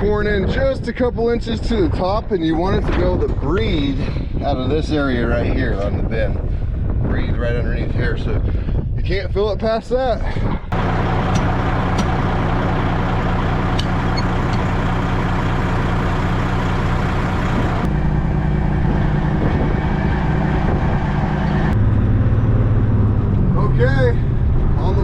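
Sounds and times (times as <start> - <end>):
diesel truck engine running: 10.7 - 25.0.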